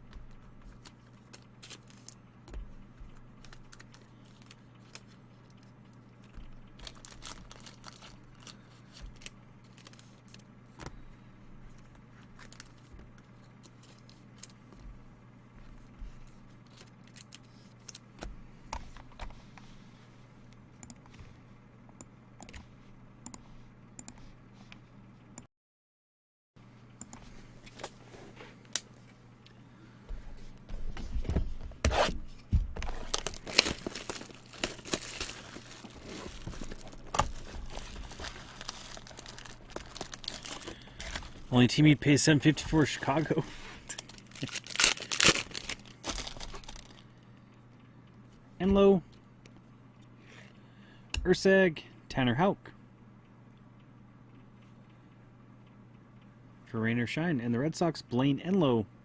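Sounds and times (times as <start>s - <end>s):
steady low hum: 0.0s - 25.5s, 26.6s - 59.0s
packaging crinkling and tearing: 0.7s - 2.2s, 3.4s - 5.6s, 6.2s - 10.5s, 12.3s - 12.8s, 32.9s - 41.6s, 43.0s - 47.0s
cards clicking and rustling: 33.0s - 41.5s, 43.9s - 47.0s.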